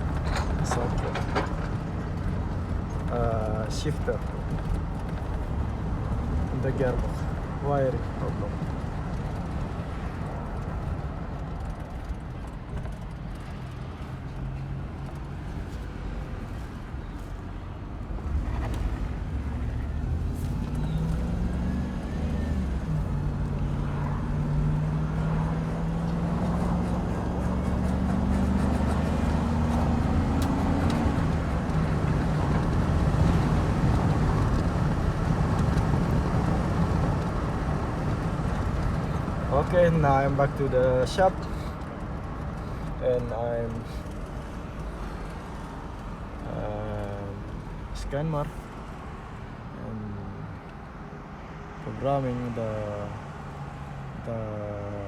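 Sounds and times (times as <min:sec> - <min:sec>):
road noise: 0:00.0 - 0:55.0
vehicle engine accelerating: 0:18.0 - 0:47.8.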